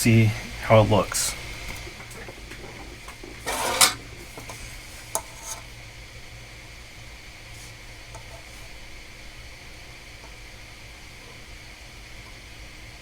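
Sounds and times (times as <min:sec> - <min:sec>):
low electrical hum: 0:00.0 - 0:13.0
scraping rustle: 0:01.0 - 0:05.8, 0:07.5 - 0:08.8.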